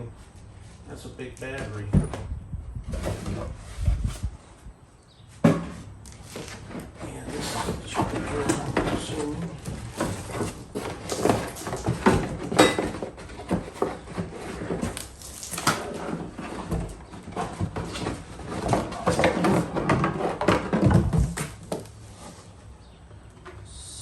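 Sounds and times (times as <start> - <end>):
packaging rustling and scraping: 2.9 - 4.4, 5.5 - 22.8
knocks and clunks: 15.6 - 22.0.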